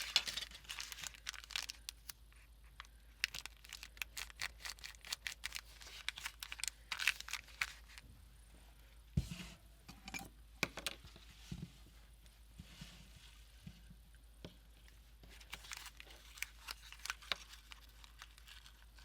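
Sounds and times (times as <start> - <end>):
paper crinkling: 0.0 - 8.0, 15.2 - 19.0.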